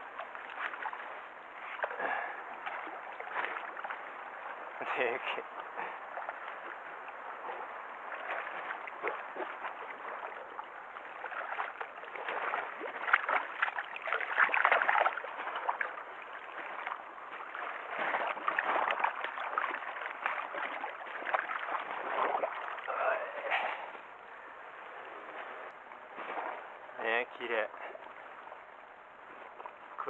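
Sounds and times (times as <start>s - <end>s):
water splashing from thrashing fish: 5.6s - 23.1s.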